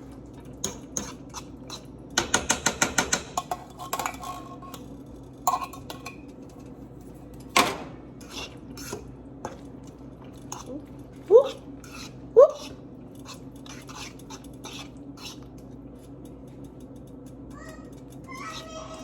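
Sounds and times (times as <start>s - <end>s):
utensil knocking against a pot: 2.2s - 3.5s.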